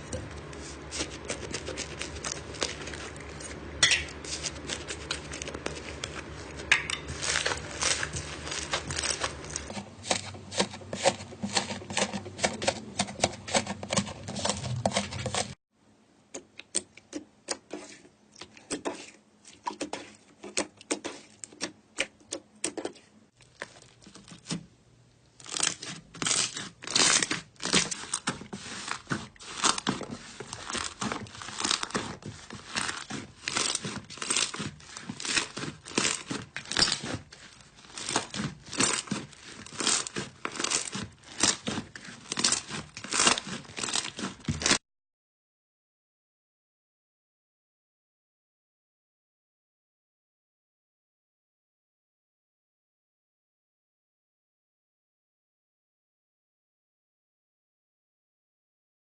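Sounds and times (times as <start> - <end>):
slime crackling and popping: 0.5 - 10.6, 25.4 - 44.8.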